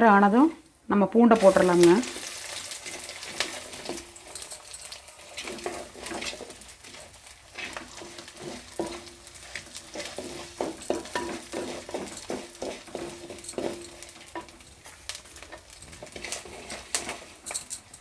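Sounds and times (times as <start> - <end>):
oil sizzling in a pot: 0.0 - 18.0
spoon scraping a pot: 1.4 - 14.6, 15.4 - 17.6.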